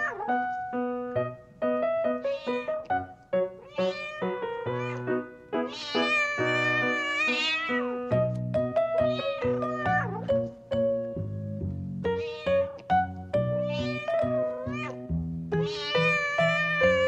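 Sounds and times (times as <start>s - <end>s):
cat meowing: 0.0s - 0.4s, 2.2s - 8.2s, 9.0s - 10.3s, 12.1s - 17.0s
background music: 0.0s - 17.0s.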